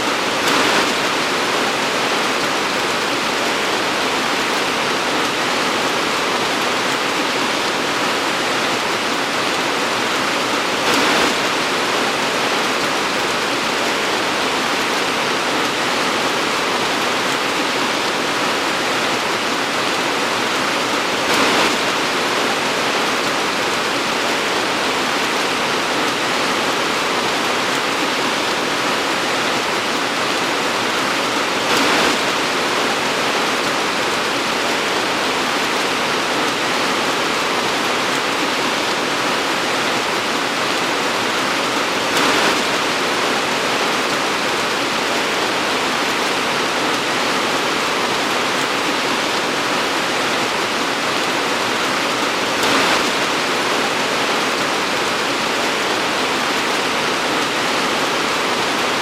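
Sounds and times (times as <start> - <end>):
heavy rain hissing: 0.0 - 59.0.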